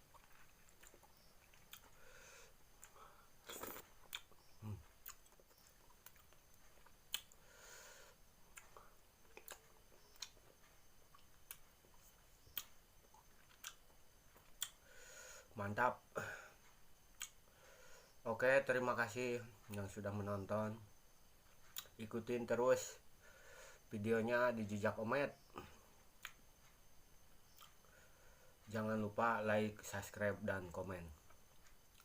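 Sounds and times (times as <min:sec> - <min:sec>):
mouth clicks and smacks: 0:00.0 - 0:02.0, 0:02.8 - 0:07.4, 0:08.5 - 0:14.8, 0:17.1 - 0:17.5, 0:21.5 - 0:22.0, 0:25.6 - 0:26.8, 0:27.5 - 0:27.9
person chewing food: 0:00.0 - 0:14.9, 0:16.6 - 0:17.5, 0:25.9 - 0:26.8, 0:27.5 - 0:28.1, 0:31.2 - 0:32.0.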